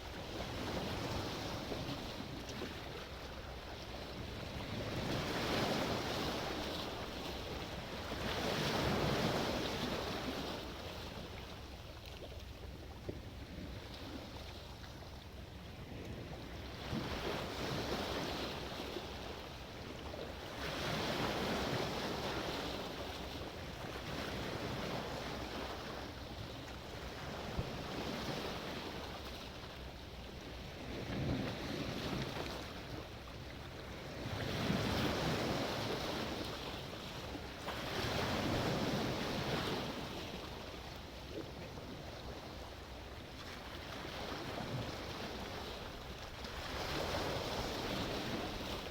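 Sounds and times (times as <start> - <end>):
sea waves breaking: 30.8 - 40.8, 43.3 - 48.9.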